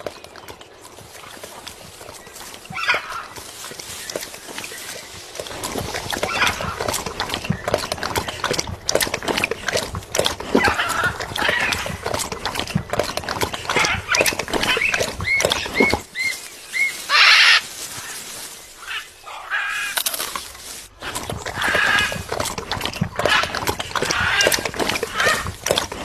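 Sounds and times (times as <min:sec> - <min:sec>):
parrot chirping and squawking: 0:13.8 - 0:18.2.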